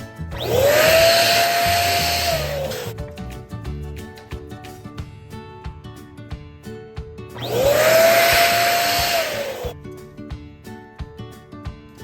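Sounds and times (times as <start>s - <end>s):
background music with steady beat: 0.0s - 12.0s
electric balloon pump blowing air: 0.4s - 3.0s, 7.4s - 9.7s.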